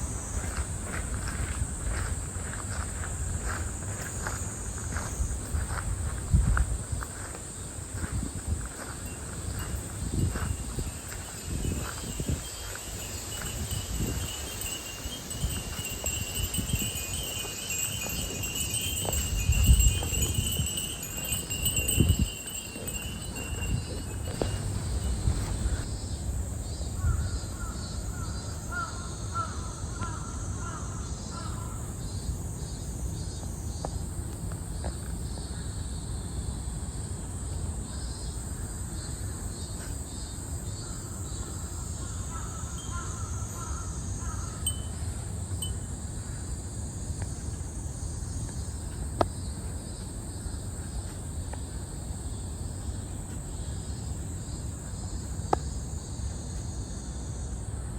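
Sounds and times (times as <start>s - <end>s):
high insect drone: 0.0s - 57.9s
low wind rumble: 4.5s - 27.7s
crow cawing: 28.7s - 31.8s, 42.1s - 44.6s.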